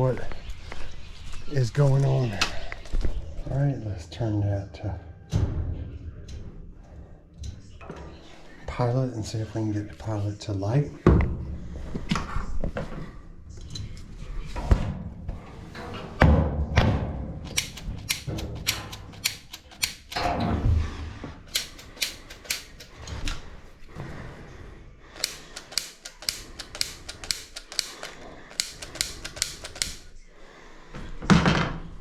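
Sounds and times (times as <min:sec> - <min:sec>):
spark igniter clicking: 0:17.5 - 0:20.2, 0:21.5 - 0:23.0, 0:25.2 - 0:30.1.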